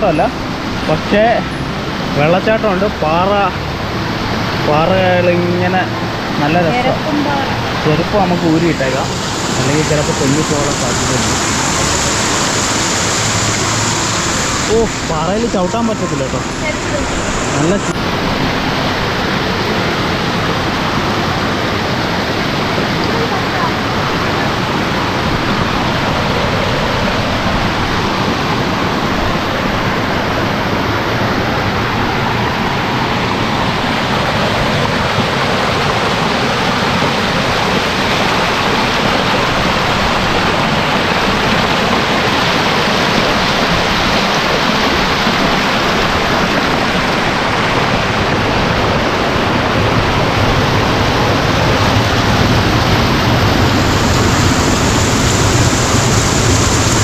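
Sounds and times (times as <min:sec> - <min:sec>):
water rushing over rocks: 0:00.0 - 0:57.0.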